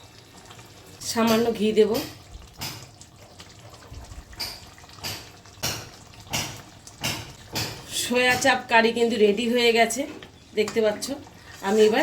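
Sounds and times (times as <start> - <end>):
spoon stirring thick curry: 9.8 - 12.0.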